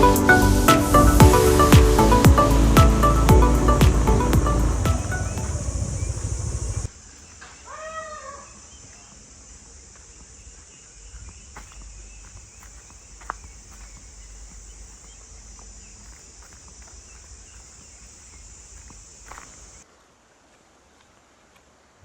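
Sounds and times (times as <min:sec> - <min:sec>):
low rumble: 0:00.0 - 0:06.9
high-pitched hiss: 0:00.0 - 0:07.7, 0:10.9 - 0:19.8
footsteps on a trail: 0:01.2 - 0:19.8, 0:20.4 - 0:21.8
rooster crowing: 0:07.7 - 0:08.6.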